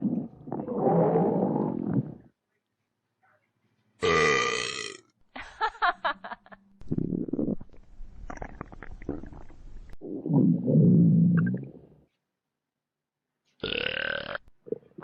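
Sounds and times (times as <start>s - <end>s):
stomach gurgling: 0.0s - 2.3s, 6.8s - 11.9s
low deep burp: 4.0s - 5.1s, 13.6s - 14.8s.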